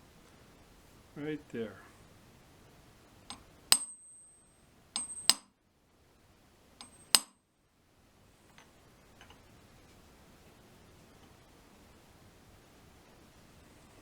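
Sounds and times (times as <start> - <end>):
metal-on-metal taps: 3.3 - 4.0, 5.0 - 5.5, 6.8 - 7.4.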